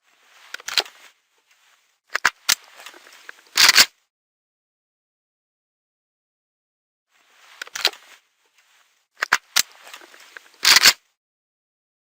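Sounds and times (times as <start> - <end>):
rifle metallic clicks and rattles: 2.1 - 3.9, 7.6 - 8.1, 9.2 - 11.0.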